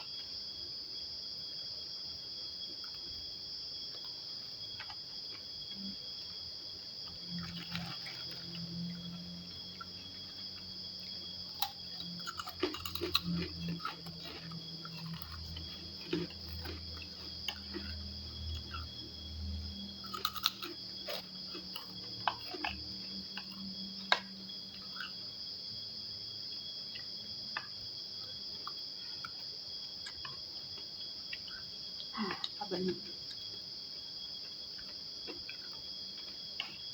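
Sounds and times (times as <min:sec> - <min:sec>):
crickets chirping: 0:00.0 - 0:36.9
eating and chewing clicks: 0:03.9 - 0:06.0, 0:07.0 - 0:25.3, 0:26.9 - 0:27.9, 0:28.5 - 0:33.6, 0:34.3 - 0:36.9.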